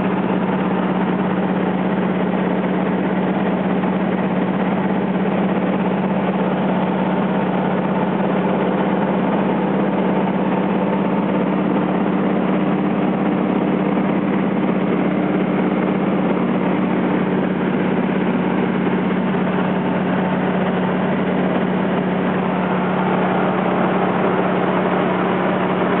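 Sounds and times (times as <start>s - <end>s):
light aircraft engine droning: 0.0s - 26.0s.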